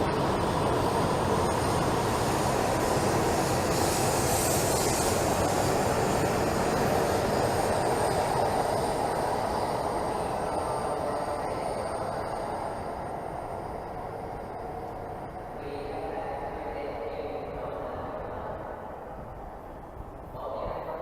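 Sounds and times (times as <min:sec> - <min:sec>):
train running past platform: 0:00.0 - 0:21.0
high hiss: 0:02.2 - 0:14.9.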